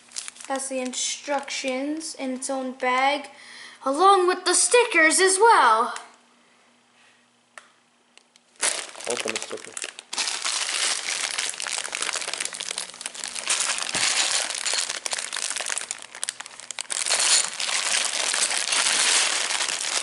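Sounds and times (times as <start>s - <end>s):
plastic bag crinkling: 0.0s - 1.0s, 8.5s - 20.0s.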